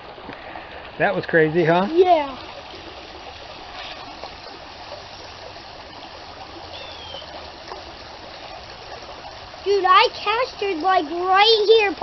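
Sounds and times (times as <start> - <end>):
creek water trickling: 0.0 - 12.0
faint chirp: 6.7 - 7.4.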